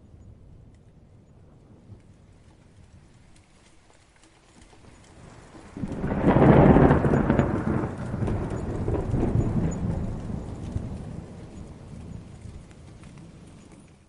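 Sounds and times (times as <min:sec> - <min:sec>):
rolling thunder: 0:05.2 - 0:13.8.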